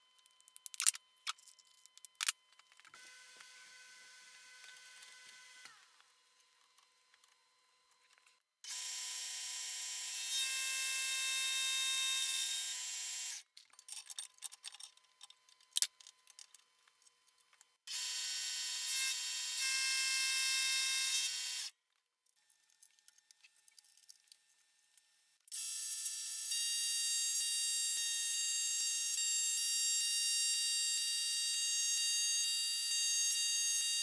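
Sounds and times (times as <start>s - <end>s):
power tool high whine: 3.0s - 6.4s, 8.7s - 13.4s, 17.9s - 21.7s, 25.6s - 34.0s.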